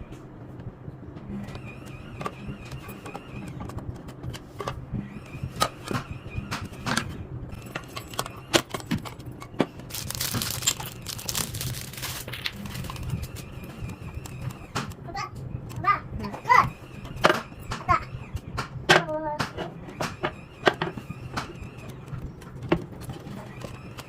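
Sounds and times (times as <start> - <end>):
steady low hum: 0.0 - 24.0
wooden toy parts clicking and knocking: 7.8 - 13.2
plastic packaging crinkling: 9.8 - 13.5.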